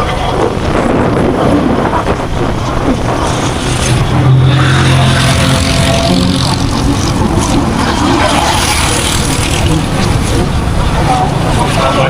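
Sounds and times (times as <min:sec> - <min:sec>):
road traffic: 0:00.0 - 0:12.0
engine humming loudly: 0:02.9 - 0:12.0.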